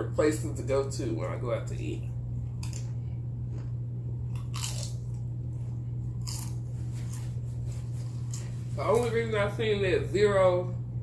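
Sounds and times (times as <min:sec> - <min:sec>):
steady low hum: 0:00.0 - 0:11.0
crunching tortilla chips: 0:02.6 - 0:02.9, 0:04.3 - 0:09.1.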